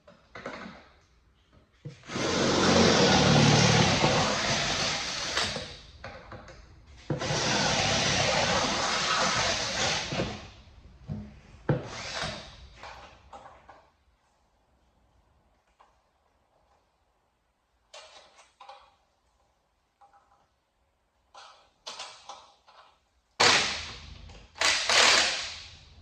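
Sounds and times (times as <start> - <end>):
power drill boring through steel: 2.1 - 5.6, 7.2 - 10.2.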